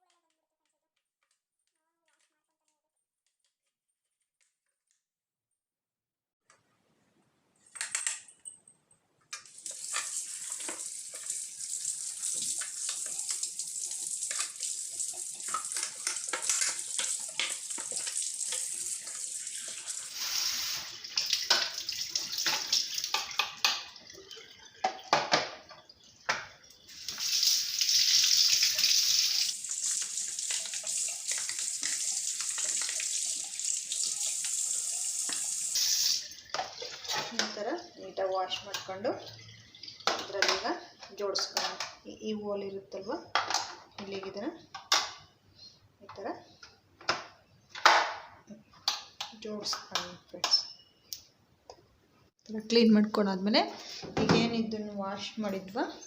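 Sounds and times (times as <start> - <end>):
tap water running and splashing: 9.4 - 40.8.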